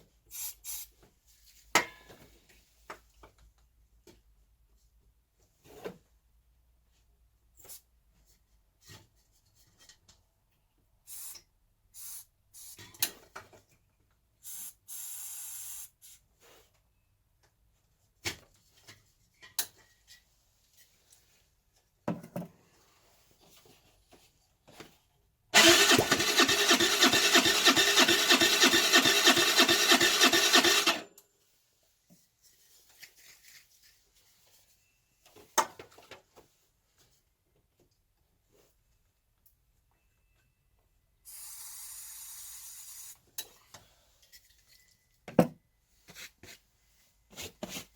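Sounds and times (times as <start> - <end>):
starter motor cranking engine: 25.6 - 31.1.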